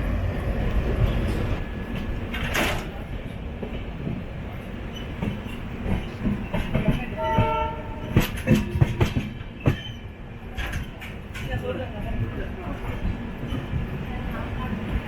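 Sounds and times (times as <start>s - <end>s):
train rumbling: 0.0s - 15.0s
wheels clicking over rail joints: 4.9s - 14.0s
locomotive horn: 7.2s - 8.2s.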